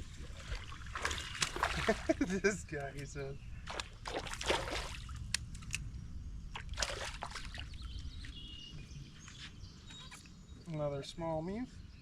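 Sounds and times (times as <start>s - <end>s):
water splashing and trickling: 0.0s - 5.8s, 6.5s - 8.5s.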